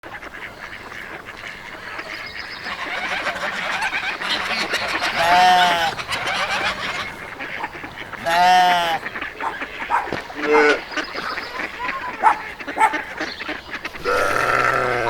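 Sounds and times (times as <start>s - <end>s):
many small animal calls: 0.0s - 15.0s
loud drawn-out animal call: 2.6s - 11.0s, 13.8s - 15.0s.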